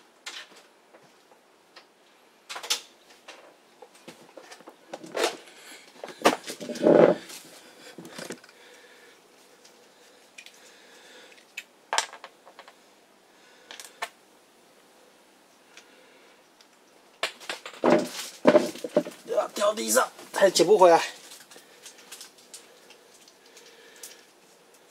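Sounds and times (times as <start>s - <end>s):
handling noise: 3.1s - 8.5s, 17.4s - 20.4s.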